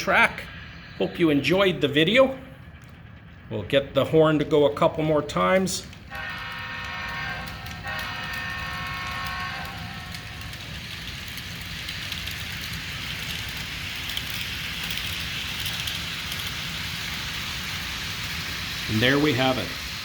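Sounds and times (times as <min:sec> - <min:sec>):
low engine drone: 0:00.0 - 0:19.0
model train wheels rolling on track: 0:00.0 - 0:20.0
model train horn: 0:05.8 - 0:12.3.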